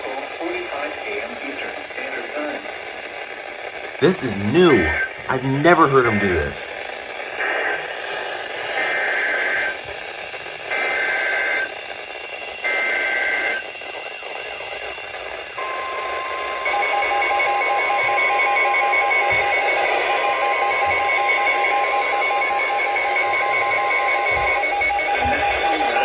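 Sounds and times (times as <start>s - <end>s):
steady warning alarm tone: 15.6s - 26.0s.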